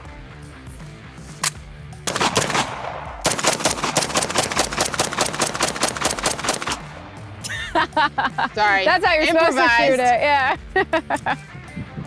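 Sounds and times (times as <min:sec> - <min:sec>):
submachine gun firing: 0:01.4 - 0:07.2.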